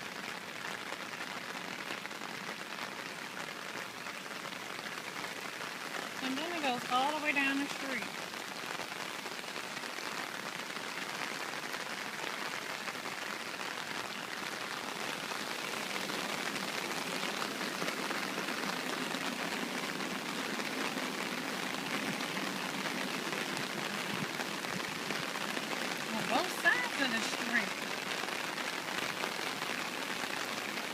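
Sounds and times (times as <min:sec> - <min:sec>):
heavy rain: 0:00.0 - 0:30.9.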